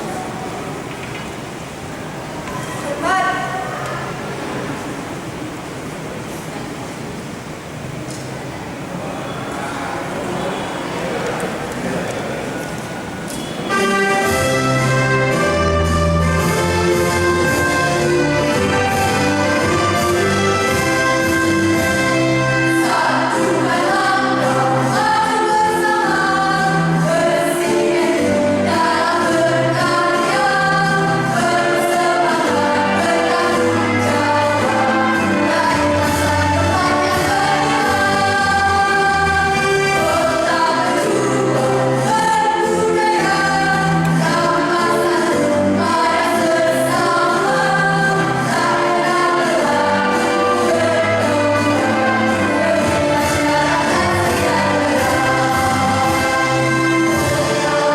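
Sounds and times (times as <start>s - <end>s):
choir singing: 13.5s - 57.9s.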